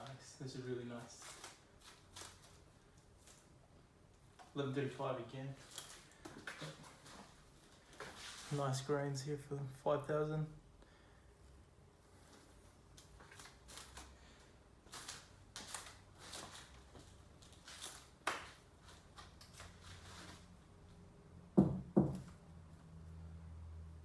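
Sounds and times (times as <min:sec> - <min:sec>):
rustles and scrapes of handling: 0:00.0 - 0:09.4, 0:11.4 - 0:21.0
sharp wooden knocks: 0:21.6 - 0:22.3.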